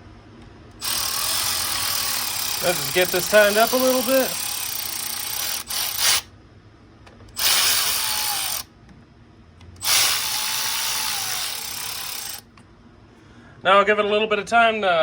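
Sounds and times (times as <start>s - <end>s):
faint motor whine: 0.0s - 14.4s
power tool running in bursts: 0.8s - 6.3s, 7.4s - 8.7s, 9.8s - 12.4s.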